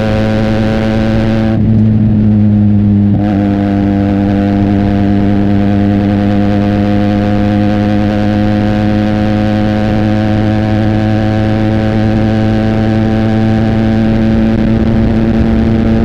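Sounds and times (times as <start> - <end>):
motorcycle engine at steady revs: 0.0 - 16.0.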